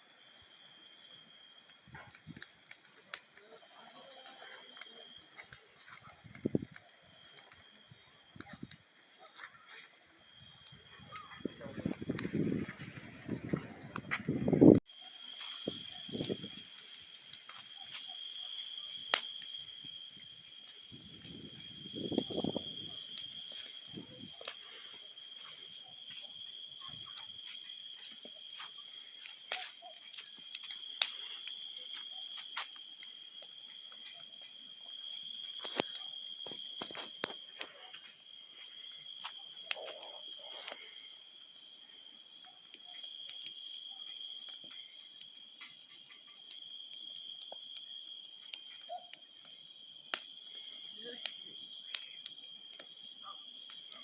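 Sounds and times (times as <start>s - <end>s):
bonfire wood crackling: 0.0s - 54.0s
insects trilling: 0.0s - 54.0s.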